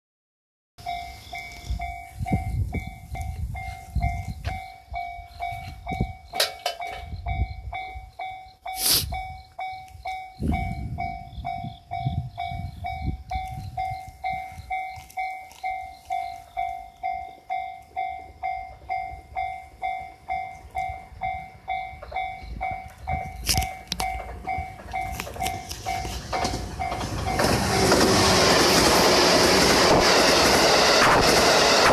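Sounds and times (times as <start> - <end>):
level crossing warning bell: 0.8 - 31.9
passing train rushing: 0.8 - 31.9.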